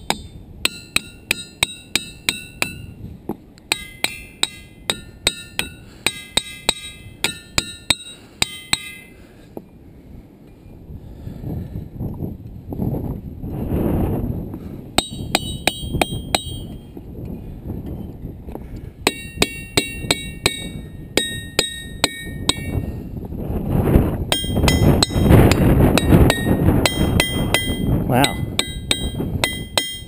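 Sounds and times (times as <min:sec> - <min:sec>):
hammer ringing on boulders: 0:00.0 - 0:03.0, 0:03.7 - 0:09.2, 0:15.0 - 0:16.9, 0:19.0 - 0:23.0, 0:24.3 - 0:30.0.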